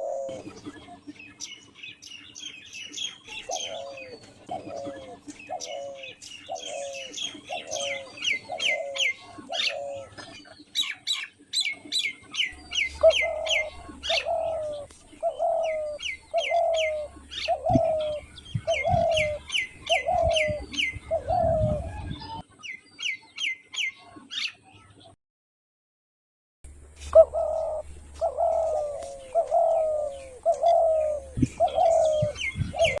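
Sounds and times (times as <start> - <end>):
dove cooing: 0.0 - 1.1, 3.3 - 10.5, 11.8 - 22.4, 27.0 - 33.0
small birds chirping: 0.0 - 25.2, 26.7 - 33.0.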